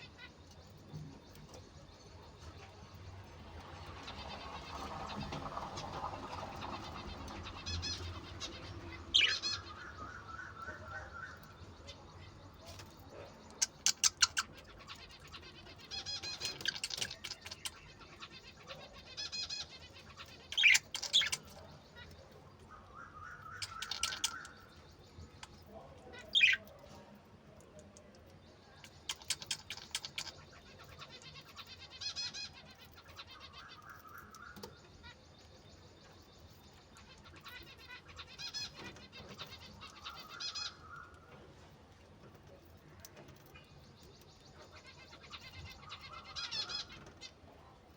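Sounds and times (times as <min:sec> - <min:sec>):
budgerigars chirping and chattering: 0:00.0 - 0:47.9
bird clicks: 0:13.5 - 0:14.5, 0:23.6 - 0:24.6, 0:28.8 - 0:30.4.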